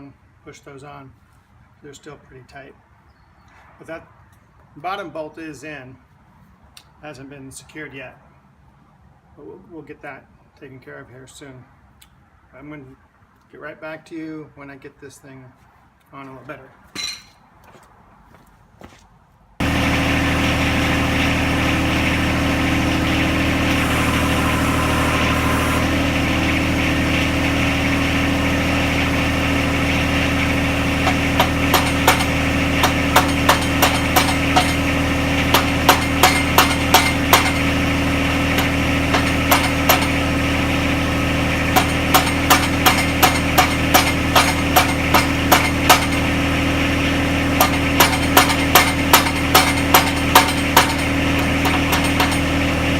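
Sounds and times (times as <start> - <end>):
tractor diesel engine idling: 19.6 - 52.9
hammer blows on metal: 23.6 - 26.1, 31.0 - 37.8, 41.7 - 46.3, 47.6 - 52.5.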